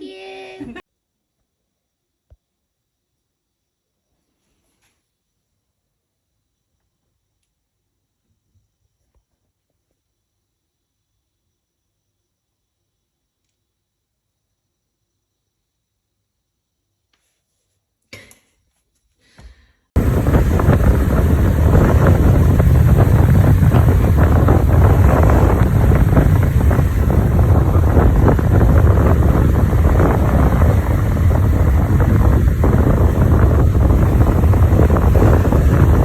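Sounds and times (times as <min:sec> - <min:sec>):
wind buffeting the microphone: 0:20.0 - 0:36.0.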